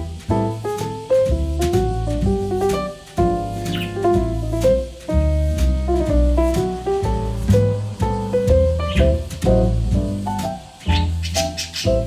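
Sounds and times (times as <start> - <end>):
gentle instrumental music: 0.0 - 12.0.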